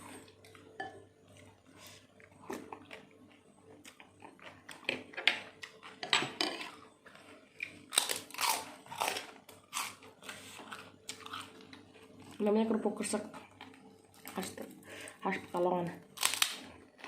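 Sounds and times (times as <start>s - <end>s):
crunching crispy crackers: 6.6s - 12.5s, 13.4s - 17.0s.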